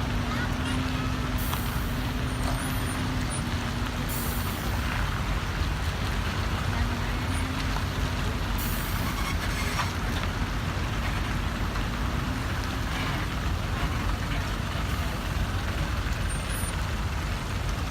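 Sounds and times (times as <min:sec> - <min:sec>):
heavy trucks rumbling: 0:00.0 - 0:17.9.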